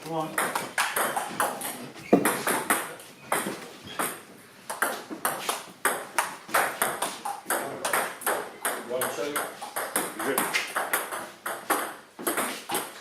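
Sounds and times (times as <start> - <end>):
table tennis ball hits: 2.1 - 2.8.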